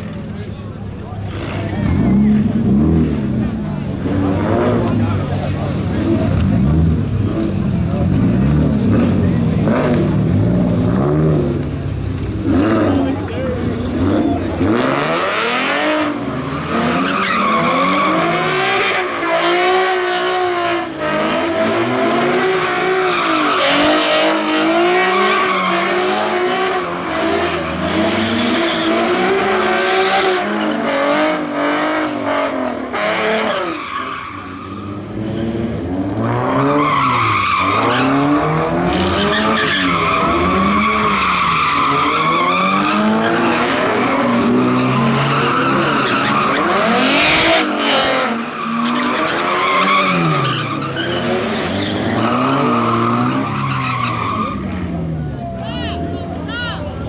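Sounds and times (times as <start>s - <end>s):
car engine revving hard: 1.2s - 55.1s
tyres screeching: 36.6s - 54.9s.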